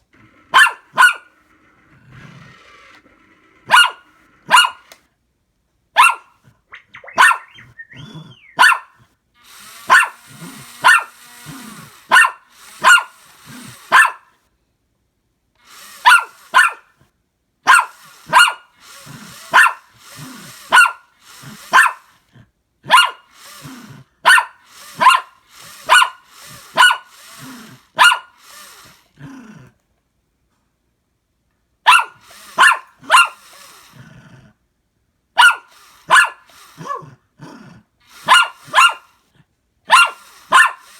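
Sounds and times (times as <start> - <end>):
dog barking: 0.5 - 1.3, 3.7 - 4.9, 6.0 - 6.4, 7.0 - 9.0, 9.8 - 11.2, 12.0 - 13.2, 13.8 - 14.3, 16.0 - 16.9, 17.6 - 18.7, 19.5 - 19.9, 20.7 - 22.1, 22.8 - 23.3, 24.2 - 27.1, 27.9 - 28.4, 31.8 - 33.4, 35.4 - 37.1, 38.2 - 39.1, 39.9 - 40.9.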